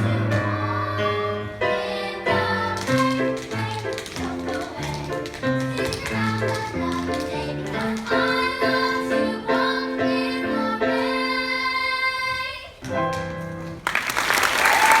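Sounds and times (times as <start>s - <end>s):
children singing: 0.0s - 12.8s
musical accompaniment: 0.0s - 13.9s
applause: 13.8s - 15.0s.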